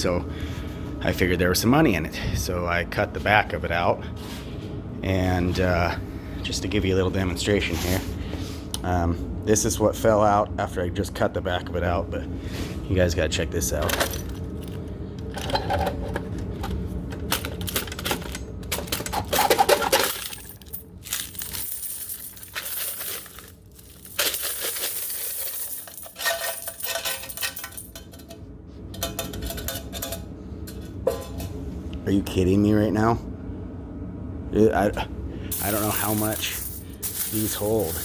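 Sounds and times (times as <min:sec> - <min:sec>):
coins clinking and spilling: 0:17.2 - 0:28.0, 0:35.5 - 0:38.0.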